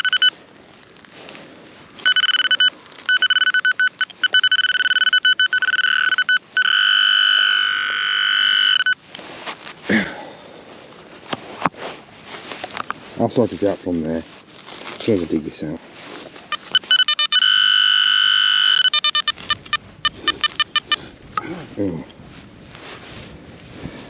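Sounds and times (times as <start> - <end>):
pinpointer electronic beeping: 0.0 - 0.3, 2.0 - 9.0, 16.5 - 21.0
faint handling noise: 9.0 - 17.4.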